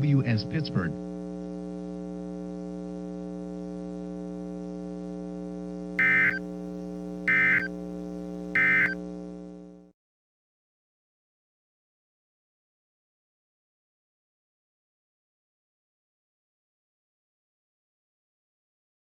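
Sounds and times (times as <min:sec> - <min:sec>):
steady electrical hum: 0:00.0 - 0:09.9
data tone bursts: 0:06.0 - 0:06.5, 0:07.3 - 0:07.7, 0:08.5 - 0:09.0.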